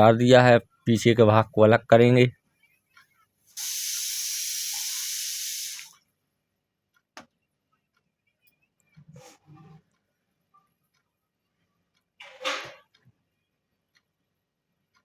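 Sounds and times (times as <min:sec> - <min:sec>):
steady hiss: 0:03.6 - 0:06.0.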